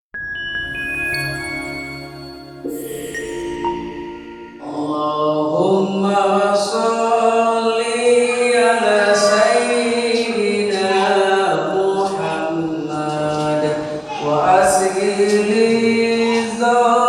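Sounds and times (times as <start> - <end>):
man chanting melodically: 4.6 - 17.0.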